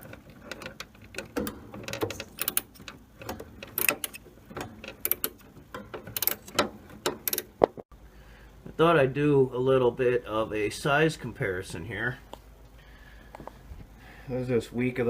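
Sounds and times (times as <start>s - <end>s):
metallic clicks and clanks: 0.0s - 7.8s.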